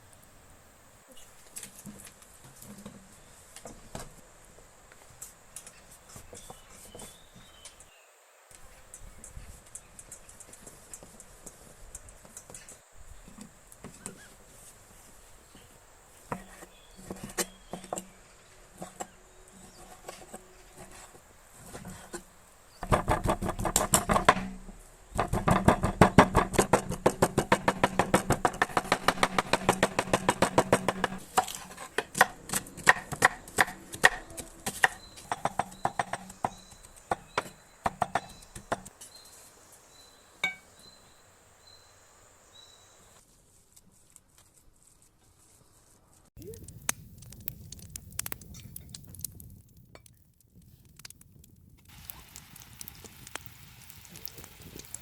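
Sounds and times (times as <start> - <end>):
low rustling with clicks: 46.3 - 55.0.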